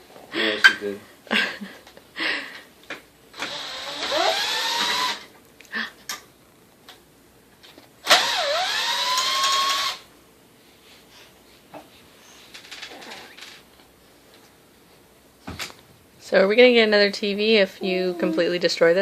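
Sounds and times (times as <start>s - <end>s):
small electric motor spinning up: 3.4s - 5.2s, 8.1s - 10.0s.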